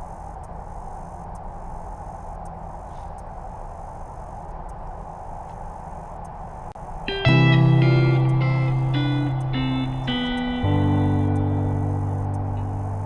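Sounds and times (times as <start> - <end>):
faint ticks: 0.0 - 6.8
insect chorus: 0.0 - 13.0.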